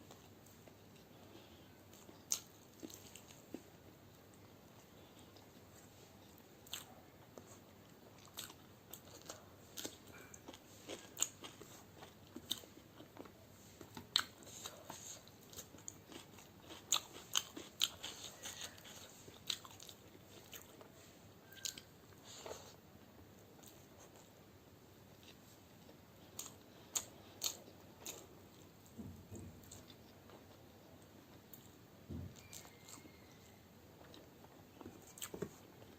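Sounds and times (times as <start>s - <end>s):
person crunching and chewing food: 0.1s - 22.8s, 25.1s - 31.8s, 32.4s - 33.4s, 34.0s - 35.9s.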